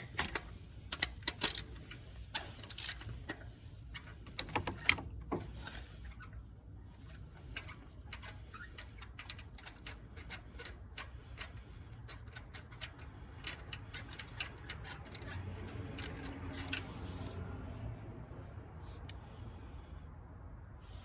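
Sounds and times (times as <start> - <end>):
ratchet wrench clicking: 0.1 - 3.1, 7.1 - 17.1.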